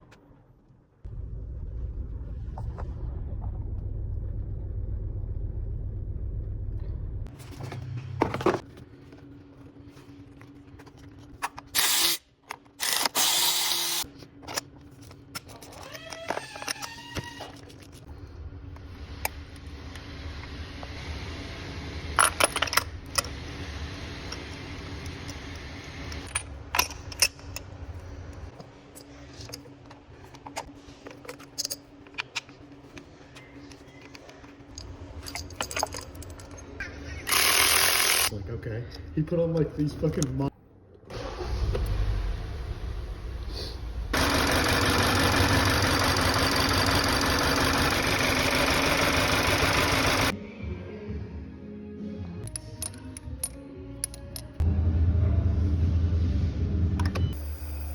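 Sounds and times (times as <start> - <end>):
low steady hum: 0.3 - 11.6
metal tools clinking: 34.2 - 36.8
car engine idling: 41.2 - 50.3.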